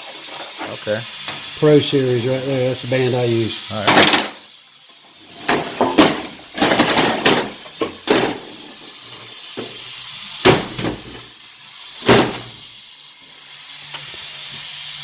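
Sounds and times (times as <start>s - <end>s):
metal parts clanking: 3.8s - 4.4s, 5.0s - 9.8s.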